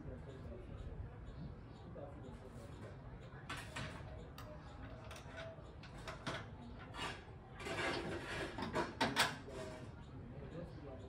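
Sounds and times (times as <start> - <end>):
scraping rub: 6.9 - 8.6.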